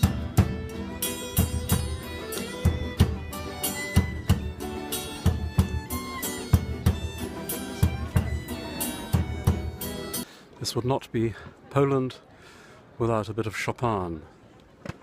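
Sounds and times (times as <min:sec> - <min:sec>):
held pitched notes: 0:00.0 - 0:10.2
steady drum beat: 0:00.0 - 0:10.2.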